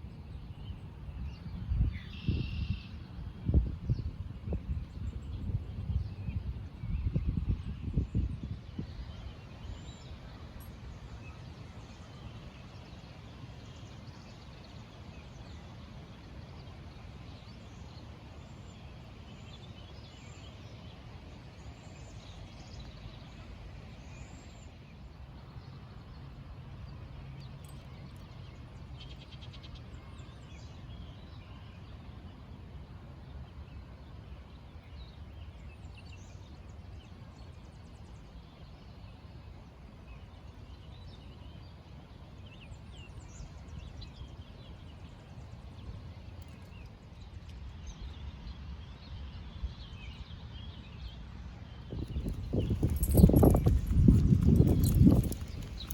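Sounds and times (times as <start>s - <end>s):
small birds chirping: 51.8s - 55.9s.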